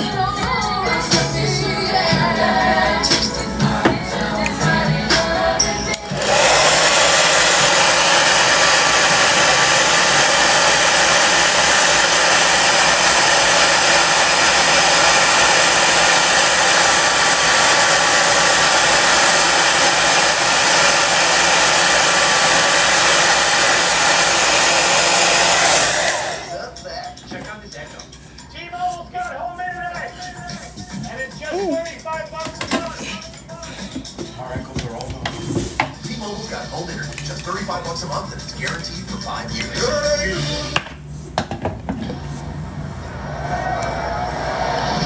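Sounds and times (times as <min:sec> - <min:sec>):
electric blower whining: 0:00.0 - 0:26.7, 0:39.3 - 0:41.1, 0:41.7 - 0:45.0.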